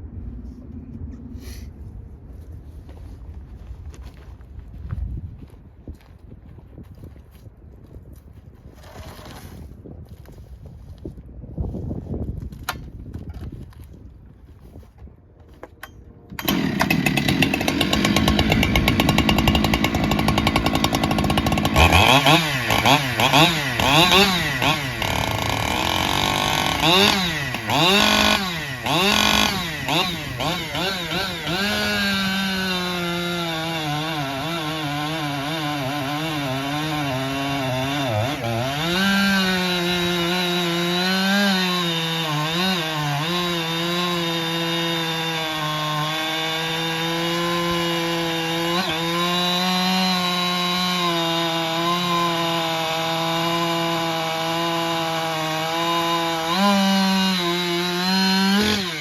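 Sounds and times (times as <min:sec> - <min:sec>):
chainsaw cutting wood: 0:16.3 - 0:59.0.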